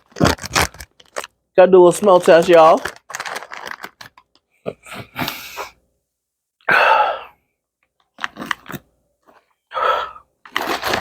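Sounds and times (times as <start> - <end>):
person sniffing: 4.8 - 5.8.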